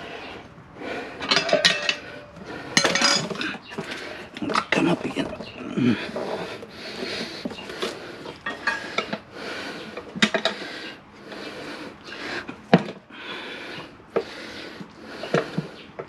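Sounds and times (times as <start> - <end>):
tire levers scraping on rim: 0.0 - 16.0
sharp metal clanks: 1.2 - 3.6.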